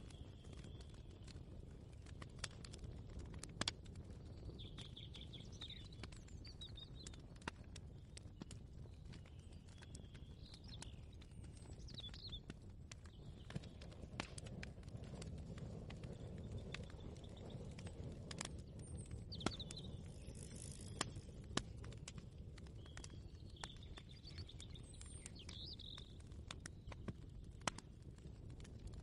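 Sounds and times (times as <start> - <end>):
bird chirps: 4.4 - 7.2, 9.1 - 12.4, 18.8 - 21.0, 22.8 - 26.2.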